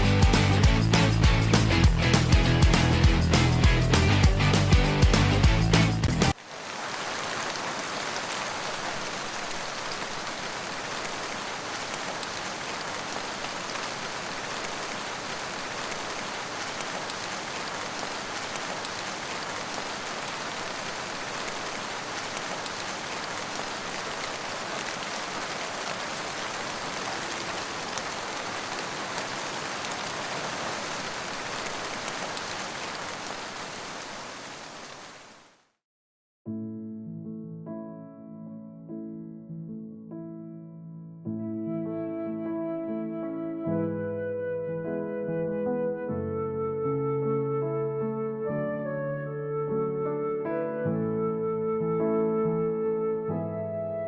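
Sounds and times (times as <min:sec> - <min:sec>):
steady rain falling: 0:00.0 - 0:35.8.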